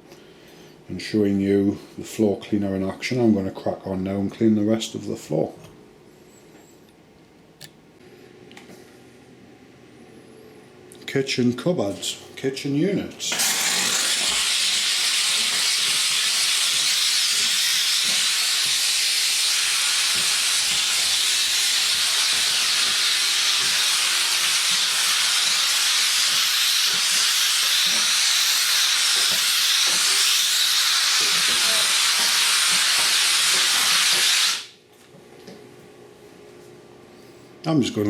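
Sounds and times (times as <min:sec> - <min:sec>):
steam cleaner hissing: 0:13.3 - 0:34.8.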